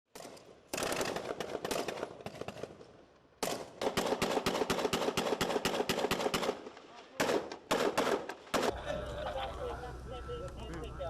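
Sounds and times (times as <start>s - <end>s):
automatic gunfire: 3.4s - 6.6s, 7.2s - 8.7s.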